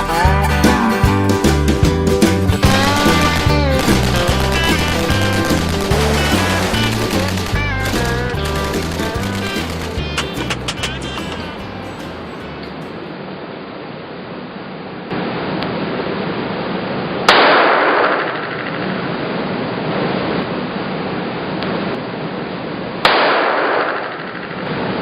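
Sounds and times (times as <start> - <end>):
gunshots with echo: 2.6 - 11.4, 17.3 - 19.1, 23.0 - 24.6.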